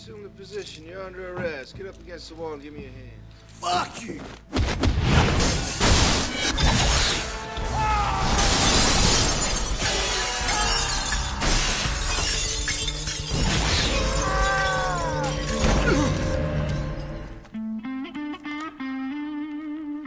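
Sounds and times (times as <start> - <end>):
film score music: 0.0 - 20.0
glass shattering: 5.4 - 7.3, 8.2 - 16.4.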